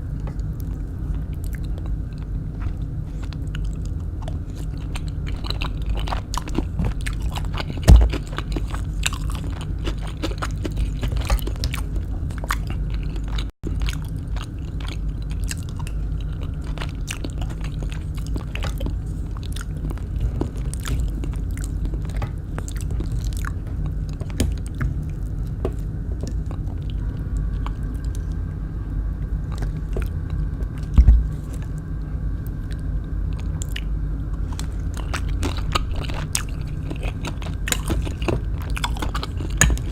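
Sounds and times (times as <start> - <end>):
chewing crunchy fried food: 0.0 - 28.5, 29.2 - 39.9
low rumble: 15.7 - 39.9.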